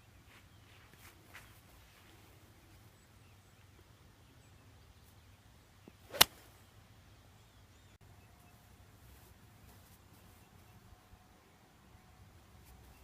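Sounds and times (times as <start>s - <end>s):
golf ball struck crack: 5.9s - 6.5s
golf club swishing: 5.9s - 6.5s.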